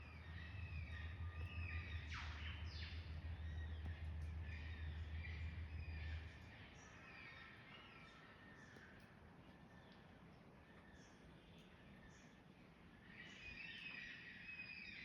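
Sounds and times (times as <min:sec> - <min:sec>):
steady low hum: 0:00.0 - 0:07.1
birds chirping and calling: 0:00.0 - 0:08.2.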